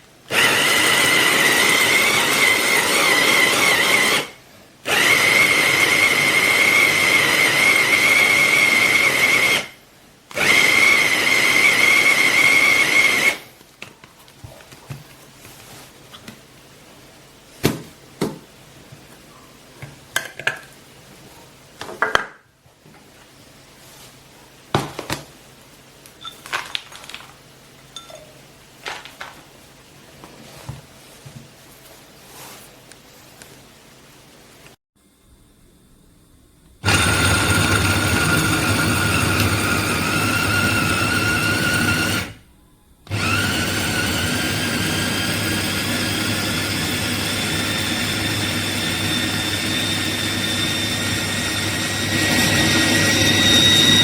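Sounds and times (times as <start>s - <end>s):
food chopper motor whining: 0.3s - 13.4s, 36.8s - 42.4s, 43.1s - 54.0s.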